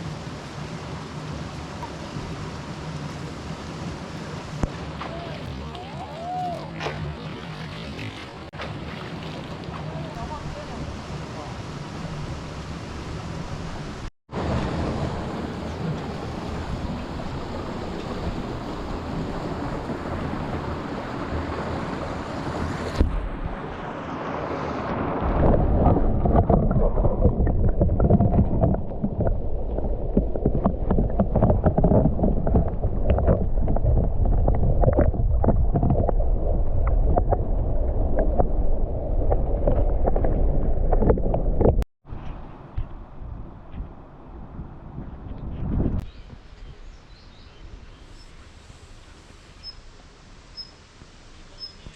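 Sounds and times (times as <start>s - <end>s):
mountain stream rushing: 0.0s - 35.5s
wind rumbling on microphone: 0.0s - 51.9s.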